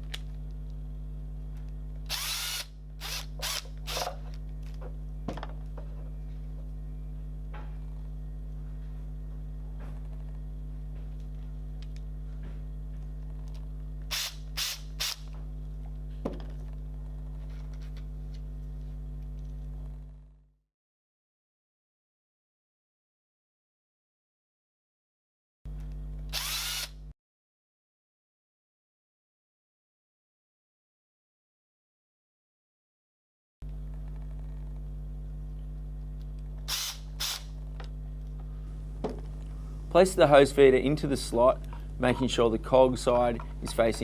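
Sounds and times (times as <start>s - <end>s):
electrical hum: 0.0s - 20.5s, 25.7s - 27.1s, 33.6s - 44.0s
cordless drill driving screws: 2.1s - 4.2s, 14.1s - 15.2s, 26.3s - 27.0s, 36.7s - 37.6s.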